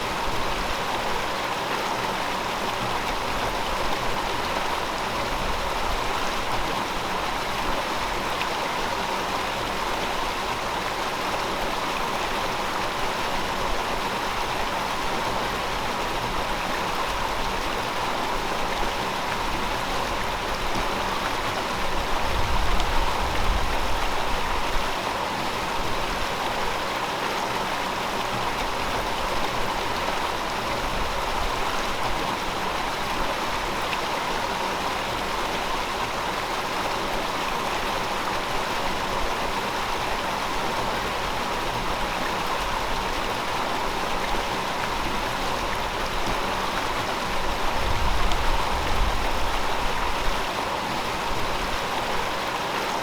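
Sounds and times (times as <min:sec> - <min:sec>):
low rumble of water: 0:00.0 - 0:53.0
river water flowing over rocks: 0:00.0 - 0:53.0.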